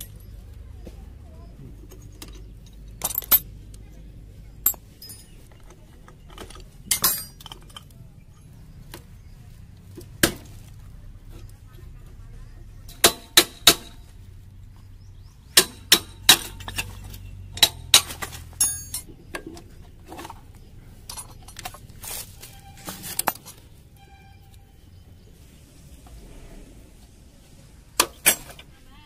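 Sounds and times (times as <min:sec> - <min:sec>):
metal tools knocking and clinking: 0:01.7 - 0:03.8, 0:04.6 - 0:08.5, 0:15.5 - 0:24.2, 0:28.0 - 0:28.7.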